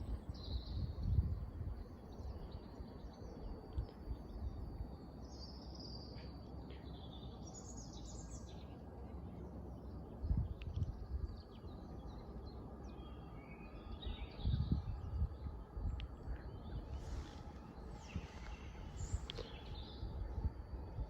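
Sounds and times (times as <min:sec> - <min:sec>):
low outdoor rumble: 0:00.0 - 0:21.0
birds chirping and trilling: 0:16.3 - 0:20.3.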